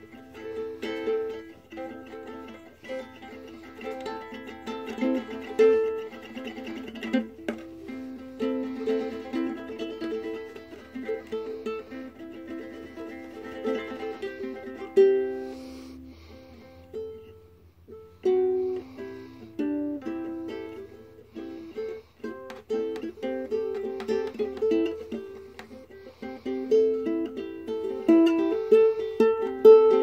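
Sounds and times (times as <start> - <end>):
ukulele playing: 0.0 - 30.0.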